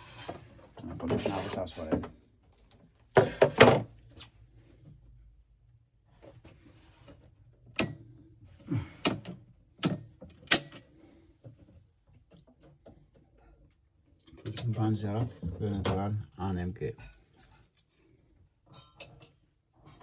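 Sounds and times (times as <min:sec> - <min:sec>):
clicks and knocks of hands working: 0:07.7 - 0:13.3.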